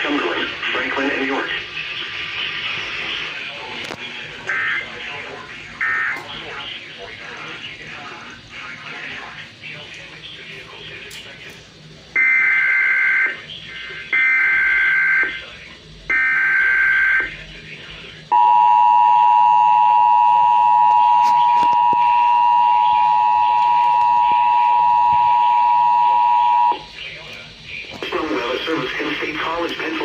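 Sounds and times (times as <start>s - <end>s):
two-tone attention signal: 18.3s - 26.9s.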